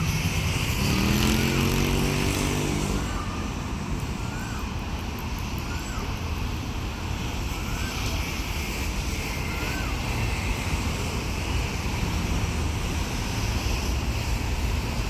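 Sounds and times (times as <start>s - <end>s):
diesel engine of rail vehicle: 0.0s - 15.0s.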